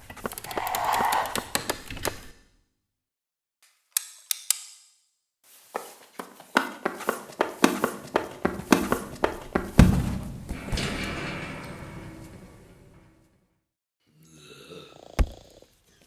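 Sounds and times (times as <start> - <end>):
heavy low ringing thump: 9.8 - 11.0.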